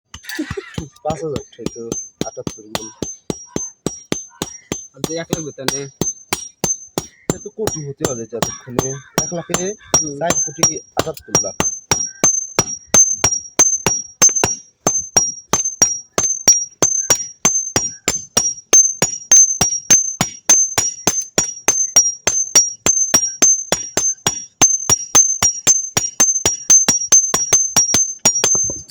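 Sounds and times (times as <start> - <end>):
hammer ringing on anvil: 0.1 - 28.9.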